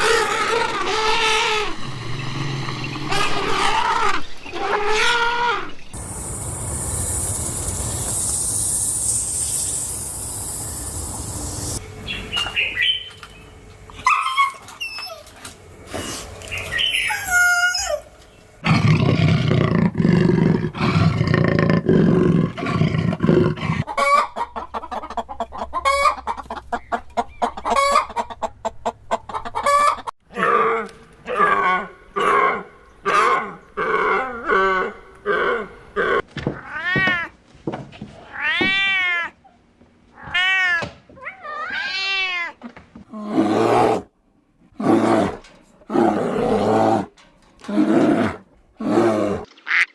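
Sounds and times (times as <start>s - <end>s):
chickens clucking: 23.8s - 30.1s.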